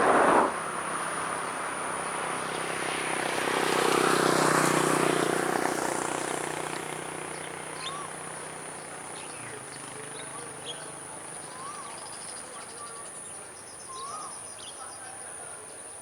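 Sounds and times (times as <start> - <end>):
engine passing by: 0.0 - 10.6.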